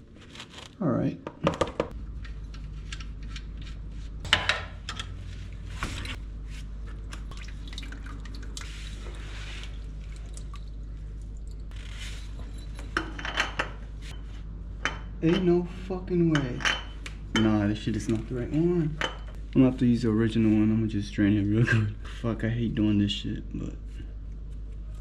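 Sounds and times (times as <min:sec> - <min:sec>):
oil dripping into container: 0:07.0 - 0:08.7, 0:09.7 - 0:11.8.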